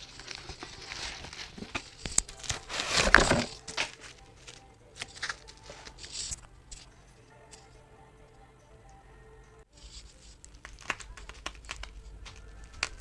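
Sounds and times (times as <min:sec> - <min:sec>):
packaging crinkling and rustling: 0:00.2 - 0:05.5.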